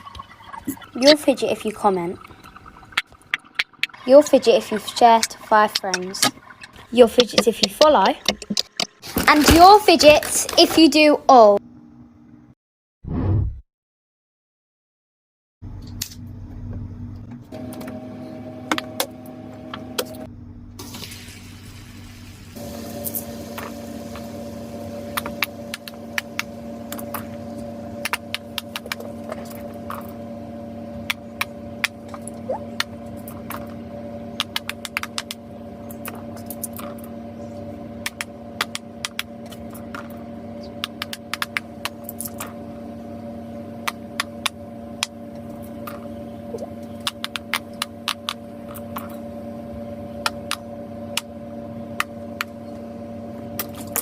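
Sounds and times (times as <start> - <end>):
steady hum: 0.0 - 12.6, 15.6 - 54.0
fidget toys clicking and popping: 7.1 - 9.0.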